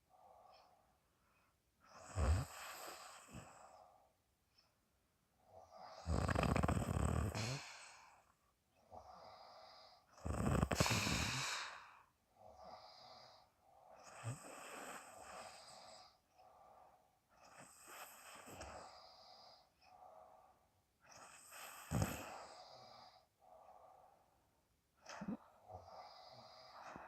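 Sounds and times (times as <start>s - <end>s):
soft breathing: 0.0s - 4.8s, 5.4s - 27.0s
woman snoring: 2.0s - 3.5s, 5.8s - 8.0s, 9.2s - 11.8s, 14.0s - 16.1s, 21.2s - 23.2s.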